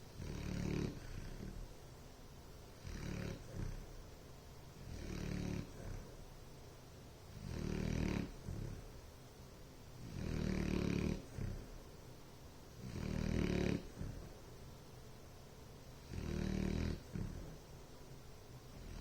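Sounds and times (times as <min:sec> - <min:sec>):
quiet breathing: 0:00.0 - 0:19.0
dog snoring: 0:00.1 - 0:01.7, 0:02.8 - 0:04.0, 0:04.8 - 0:06.2, 0:07.3 - 0:09.0, 0:10.0 - 0:11.8, 0:12.8 - 0:14.4, 0:16.0 - 0:17.7, 0:18.7 - 0:19.0.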